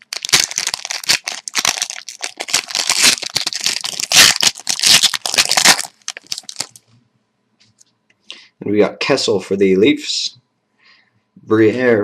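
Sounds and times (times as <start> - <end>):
card wrapper tearing and crinkling: 0.0 - 6.8.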